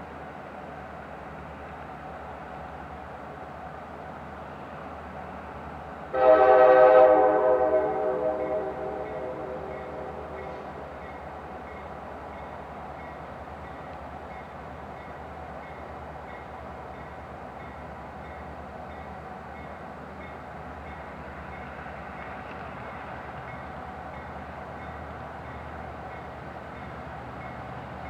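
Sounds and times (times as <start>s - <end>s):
diesel locomotive engines rumbling: 0.0s - 28.0s
train horn blast: 6.1s - 10.9s.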